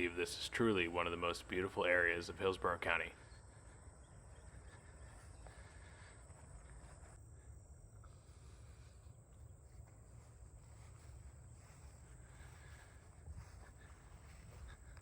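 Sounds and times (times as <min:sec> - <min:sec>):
crickets chirping: 0:00.0 - 0:15.0
faint low rumble: 0:03.1 - 0:15.0.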